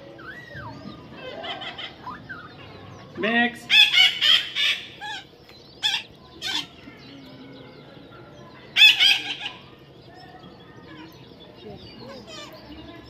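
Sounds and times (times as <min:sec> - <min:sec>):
parrot squawking: 0:03.7 - 0:06.7, 0:08.8 - 0:09.6.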